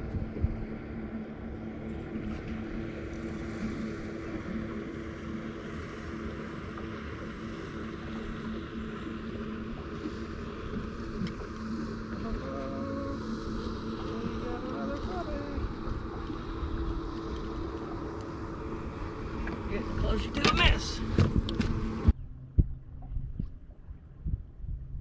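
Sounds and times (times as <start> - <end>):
boat motor humming: 0.0 - 25.0
water: 0.0 - 25.0
wind noise: 13.6 - 25.0.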